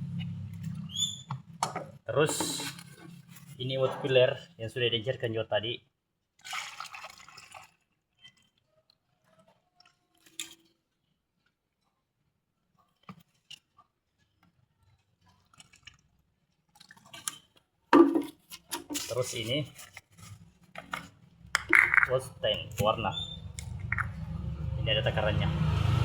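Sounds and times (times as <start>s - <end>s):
liquid sloshing in a container: 6.3s - 10.9s, 12.9s - 24.3s.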